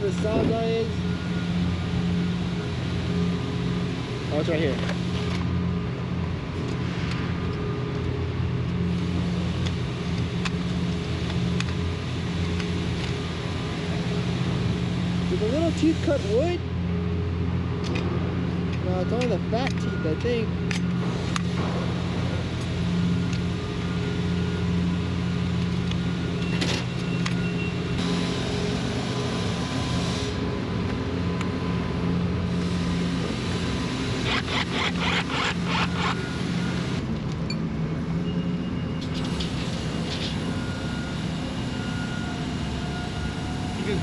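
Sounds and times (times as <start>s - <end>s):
engine humming: 0.0s - 44.0s.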